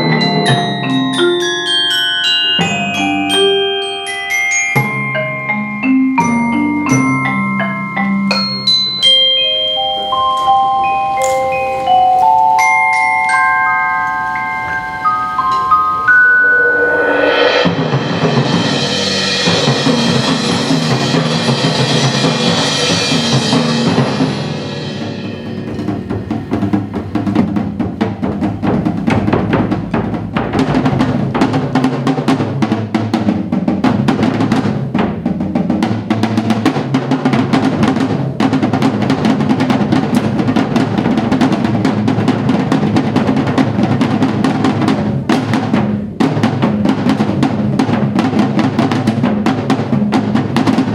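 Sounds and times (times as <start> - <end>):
sustained ringing wash: 0.0 - 27.6
fast dense drum strokes: 14.7 - 50.9.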